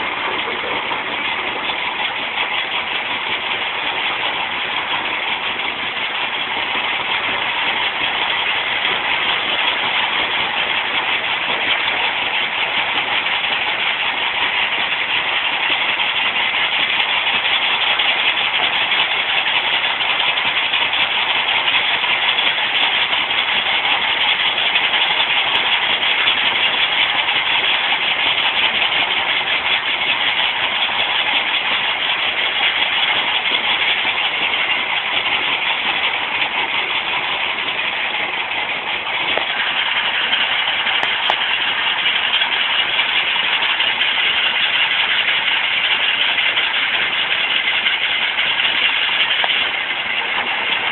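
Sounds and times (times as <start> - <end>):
stone crusher machine running: 0.0 - 50.9.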